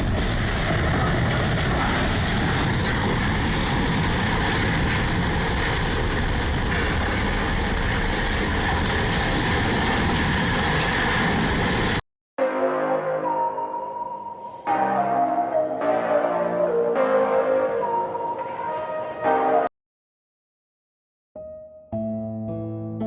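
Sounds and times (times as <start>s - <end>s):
heavy vehicle running: 0.0s - 12.0s.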